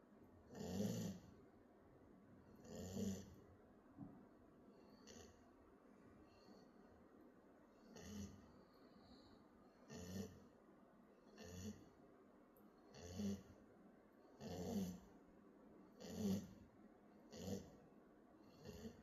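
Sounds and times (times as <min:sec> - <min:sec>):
puppy snoring faintly: 0:00.5 - 0:01.4, 0:02.5 - 0:03.4, 0:04.8 - 0:05.6, 0:07.7 - 0:10.6, 0:11.2 - 0:12.0, 0:12.9 - 0:13.6, 0:14.3 - 0:15.2, 0:15.9 - 0:19.0.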